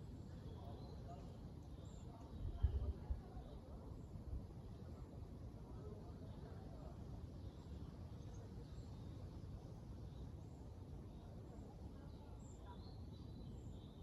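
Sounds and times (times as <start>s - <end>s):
faint birds chirping: 0.0s - 4.1s, 7.4s - 14.0s
wind buffeting the microphone: 2.4s - 3.4s.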